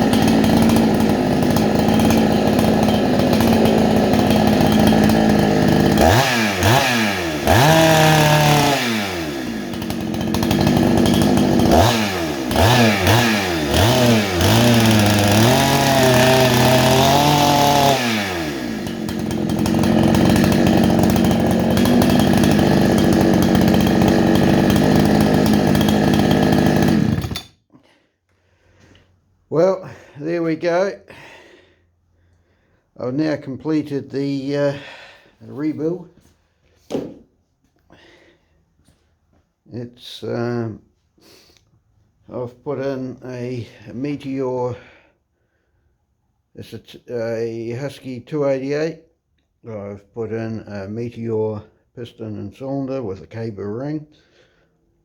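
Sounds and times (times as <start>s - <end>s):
chainsaw revving and idling: 0.0s - 27.6s, 33.2s - 36.3s, 42.5s - 45.1s.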